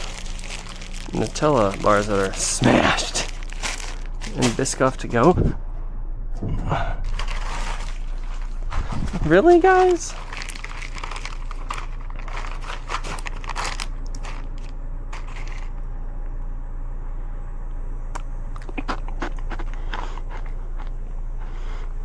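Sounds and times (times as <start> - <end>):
plastic packaging crinkling: 0.0 - 5.4, 7.0 - 15.7
steady low hum: 0.0 - 22.0.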